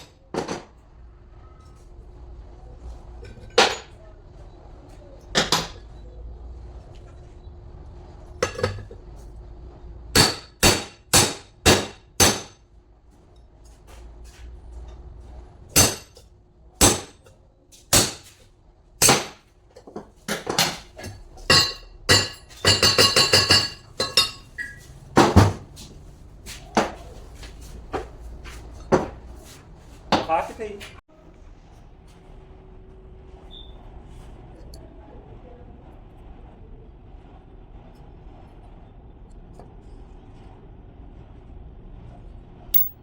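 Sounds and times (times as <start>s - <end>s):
hammer striking metal: 0.0s - 0.6s, 10.2s - 12.6s, 15.7s - 16.2s, 16.8s - 17.2s, 17.9s - 18.3s, 19.0s - 19.4s, 21.5s - 25.5s, 42.8s - 43.0s.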